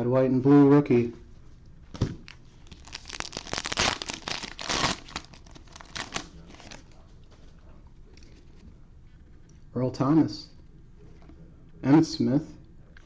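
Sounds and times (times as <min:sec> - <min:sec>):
cellophane wrapper tearing and crinkling: 0:02.2 - 0:06.9.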